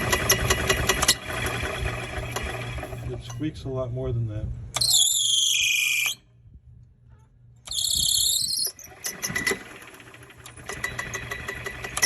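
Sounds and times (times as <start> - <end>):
engine running with ticking clatter: 0.0 - 3.4, 8.9 - 12.0
belt drive squeal: 4.8 - 6.2, 7.7 - 9.6.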